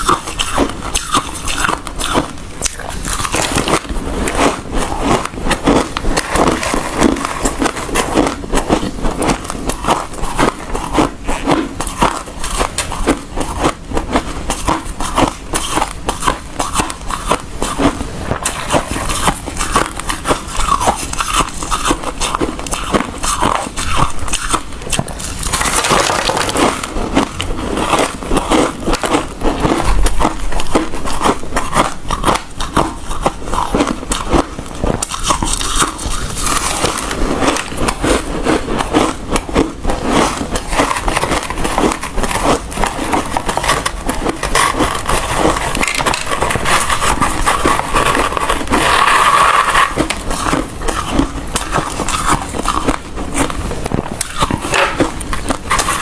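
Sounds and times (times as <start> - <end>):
ice being chewed: 0.0 - 56.0.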